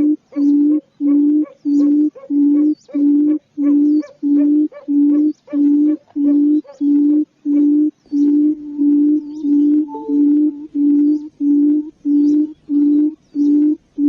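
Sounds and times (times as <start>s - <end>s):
quail hooting: 0.0s - 14.0s
faint high chirps: 8.1s - 11.6s.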